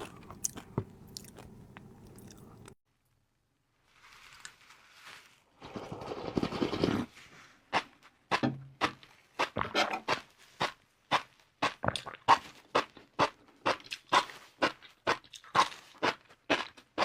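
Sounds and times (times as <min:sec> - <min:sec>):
crunchy chewing: 0:00.0 - 0:02.8, 0:12.0 - 0:17.0
noisy bite: 0:00.0 - 0:02.8.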